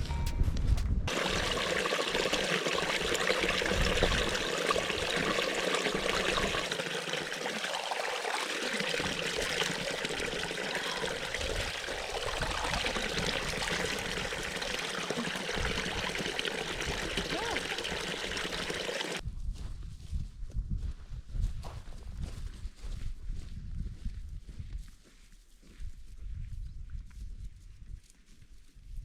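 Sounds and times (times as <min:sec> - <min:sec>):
stream of running water: 0:01.1 - 0:19.2.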